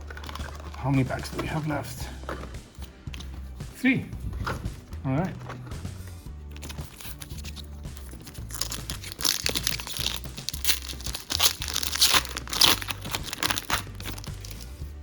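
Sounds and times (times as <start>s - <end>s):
foil wrapper crinkling and tearing: 0.0s - 3.3s, 6.5s - 14.9s
quiet background music: 0.0s - 15.0s.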